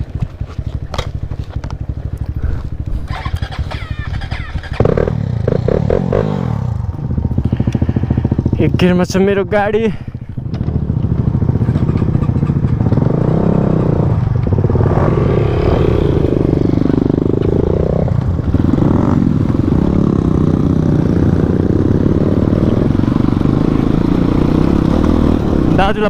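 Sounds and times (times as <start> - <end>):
motorcycle engine revving: 0.0 - 26.0.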